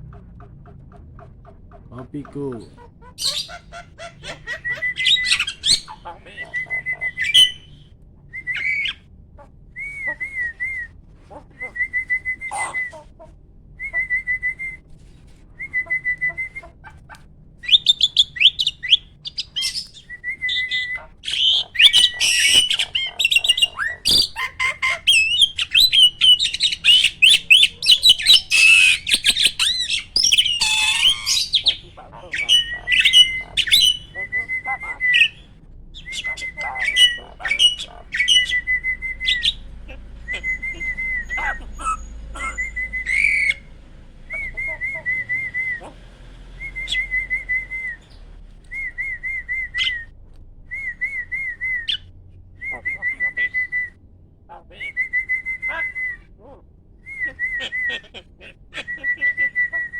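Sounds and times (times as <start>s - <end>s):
starling chattering warble: 0.0s - 7.8s, 20.5s - 48.2s, 57.2s - 59.9s
starling whistled phrases: 3.2s - 9.0s, 9.8s - 11.0s, 11.6s - 13.1s, 13.8s - 14.9s, 15.6s - 16.8s, 17.6s - 50.1s, 50.7s - 54.0s, 54.8s - 56.3s, 57.0s - 58.1s, 58.8s - 59.9s.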